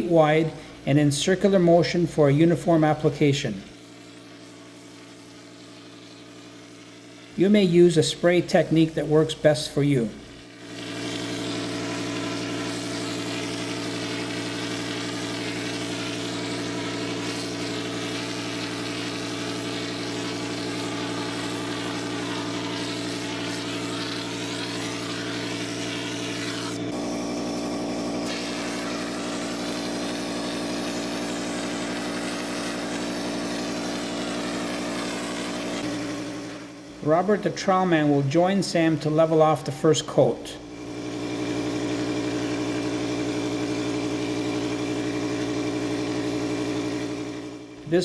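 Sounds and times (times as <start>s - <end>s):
spray gun hissing: 0.0s - 48.0s
motor hum: 8.7s - 37.8s, 40.6s - 48.0s.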